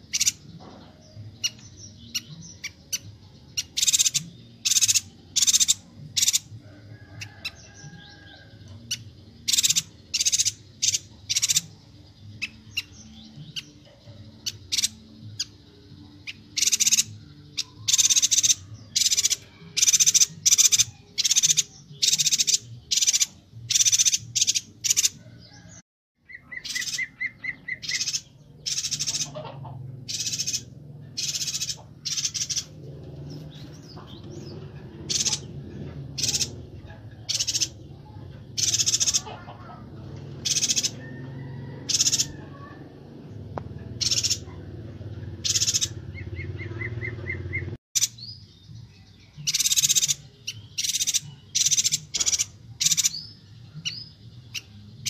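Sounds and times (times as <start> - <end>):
bird trill: 0.0 - 43.0, 43.8 - 55.0
bird chirping harshly: 3.6 - 6.5, 8.9 - 11.7, 16.3 - 25.2, 26.2 - 32.8, 36.2 - 36.5, 37.3 - 37.8, 38.6 - 39.5, 44.0 - 44.6, 49.4 - 54.8.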